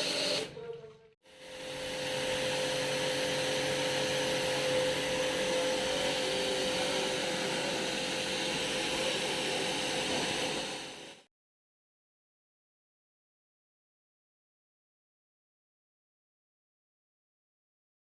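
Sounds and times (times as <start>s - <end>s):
pressure washer motor hum: 0.0s - 11.3s.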